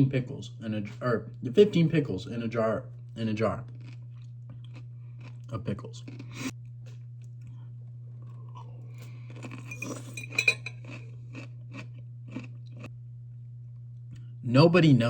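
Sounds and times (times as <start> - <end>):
steady low hum: 0.0 - 15.0
chewing crunchy pickle: 2.9 - 12.9
clicks and clinks: 9.6 - 10.8.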